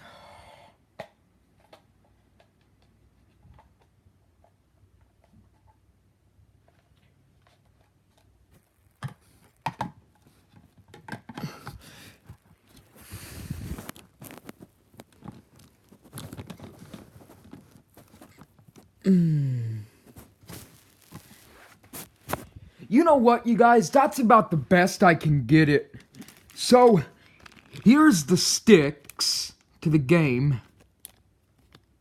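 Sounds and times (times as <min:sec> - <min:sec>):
rustling: 0:12.1 - 0:19.0, 0:19.9 - 0:22.9, 0:25.9 - 0:28.4.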